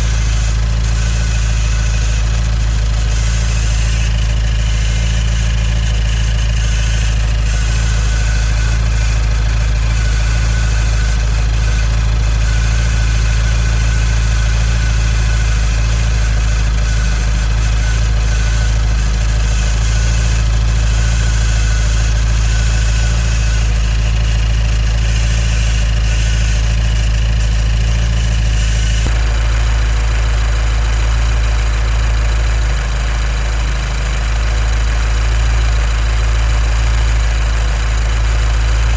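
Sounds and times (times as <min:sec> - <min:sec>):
static-like engine noise: 0:00.0 - 0:30.8
car engine idling: 0:00.0 - 0:38.9.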